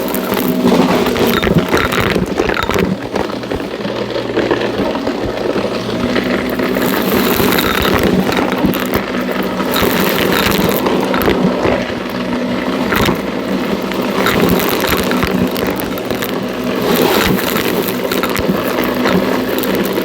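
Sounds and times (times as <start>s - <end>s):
debris crackling in vacuum: 0.0s - 20.0s
vacuum cleaner running: 0.0s - 20.0s.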